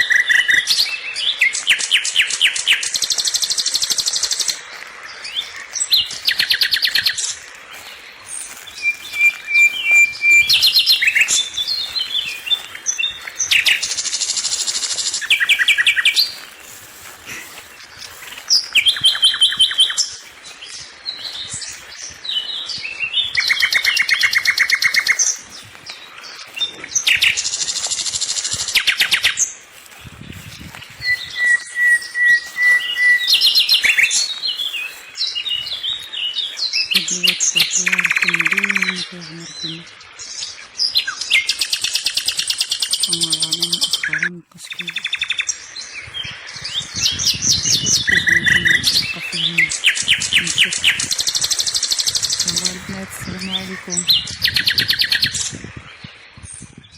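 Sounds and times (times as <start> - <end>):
songbird singing trills: 0.0 - 56.9.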